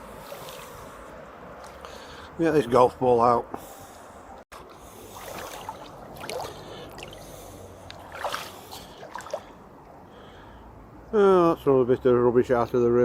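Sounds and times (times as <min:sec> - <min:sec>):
water splashing and sloshing: 0:00.0 - 0:02.3, 0:04.5 - 0:10.1
shallow river water running: 0:00.0 - 0:02.4, 0:04.5 - 0:10.7.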